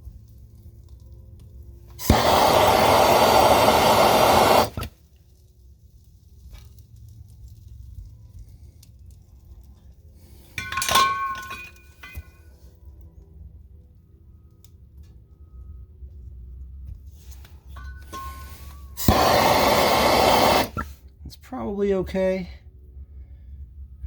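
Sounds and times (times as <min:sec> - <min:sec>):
torch flame hissing: 0:01.7 - 0:09.3, 0:17.2 - 0:21.1
metallic clink: 0:10.5 - 0:12.5, 0:17.7 - 0:19.3.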